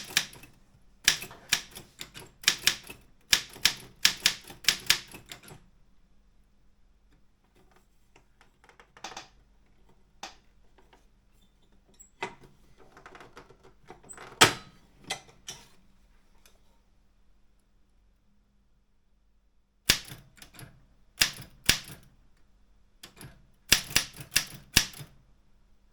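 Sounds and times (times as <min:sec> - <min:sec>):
typewriter mechanism clicks and knocks: 0:00.0 - 0:05.6, 0:19.9 - 0:22.2, 0:23.0 - 0:25.2
typewriter typing: 0:00.0 - 0:05.6, 0:19.9 - 0:22.1, 0:23.0 - 0:25.2.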